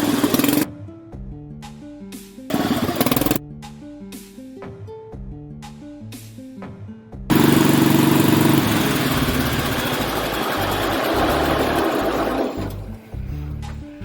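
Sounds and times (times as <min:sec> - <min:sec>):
riding lawn mower engine: 0:00.0 - 0:00.7, 0:02.5 - 0:03.4, 0:07.3 - 0:13.0
background music: 0:00.0 - 0:07.3, 0:09.2 - 0:14.0.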